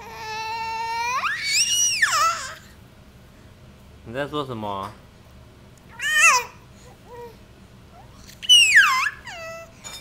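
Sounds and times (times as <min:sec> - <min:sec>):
baby squealing: 0:00.0 - 0:02.8, 0:05.9 - 0:06.6, 0:08.0 - 0:09.8
baby cooing: 0:05.9 - 0:07.4.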